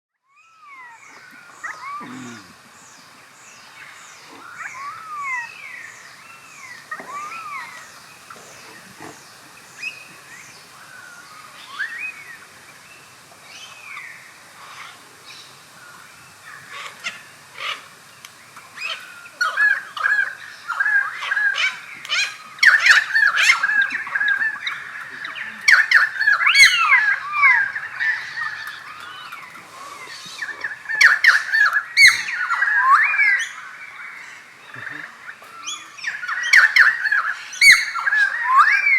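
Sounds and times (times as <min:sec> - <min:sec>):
bird whistled calls: 0:30.4 - 0:33.5, 0:35.7 - 0:38.9.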